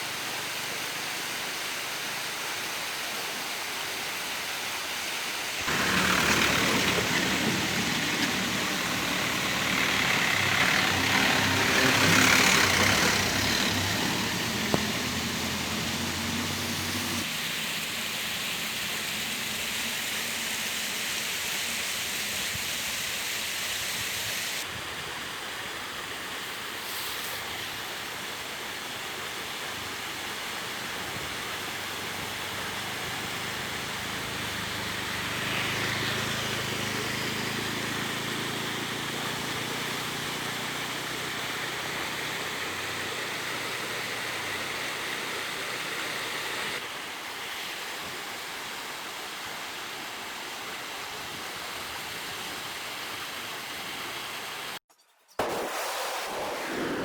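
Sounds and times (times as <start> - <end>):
diesel engine running: 5.6 - 17.3, 30.7 - 46.8.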